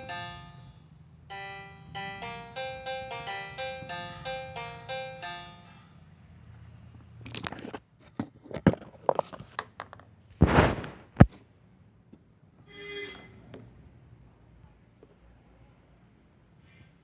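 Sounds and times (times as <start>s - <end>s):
handling clicks taps and scrapes: 7.3s - 10.1s
sharp knock: 10.4s - 11.3s
short rustle: 10.4s - 11.4s.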